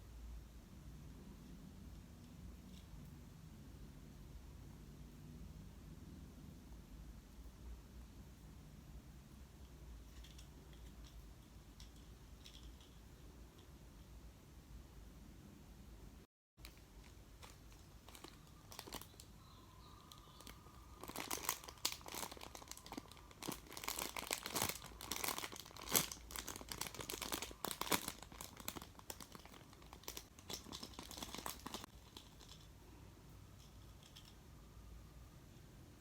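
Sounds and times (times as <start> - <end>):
plastic wrapping crinkling: 16.6 - 32.7.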